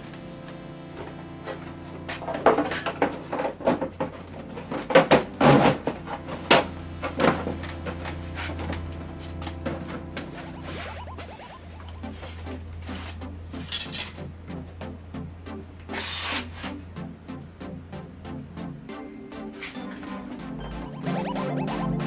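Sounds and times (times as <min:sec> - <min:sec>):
low hum: 0:04.3 - 0:18.9.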